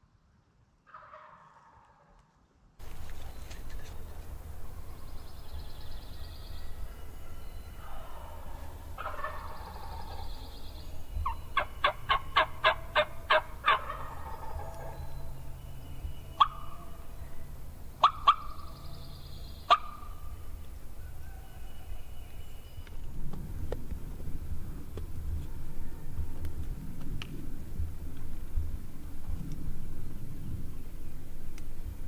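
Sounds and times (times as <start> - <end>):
turkey gobbling: 0.9 - 2.2, 6.5 - 10.5, 11.2 - 15.5, 16.4 - 17.1, 18.0 - 18.8, 19.6 - 20.3
turkey yelps: 0.9 - 2.2, 6.5 - 10.5, 11.2 - 15.3, 16.4 - 17.0, 18.0 - 18.8, 19.6 - 20.4
turkey cutts: 0.9 - 4.7, 6.4 - 10.6, 11.2 - 15.2, 16.4 - 17.0, 18.0 - 18.7, 19.6 - 20.8.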